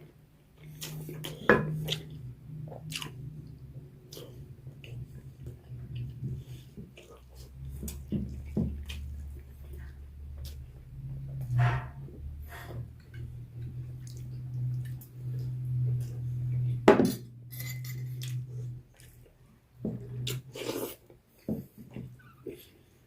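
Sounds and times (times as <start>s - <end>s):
steady low hum: 0.0s - 22.2s
cutlery and dishes clinking: 17.0s - 18.4s.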